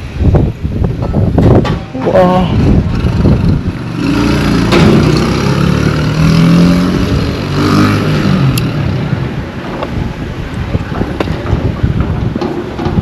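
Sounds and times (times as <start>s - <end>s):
vehicle engine passing: 2.4s - 9.6s.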